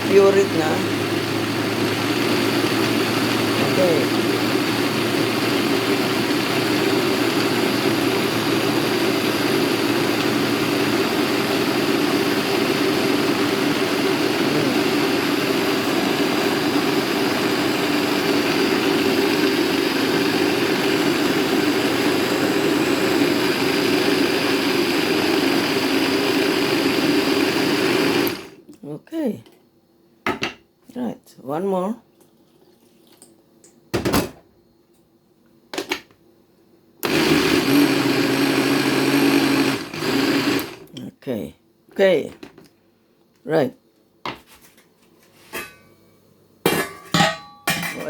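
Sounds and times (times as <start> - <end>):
electric blender motor running: 0.0 - 28.6, 37.0 - 40.9.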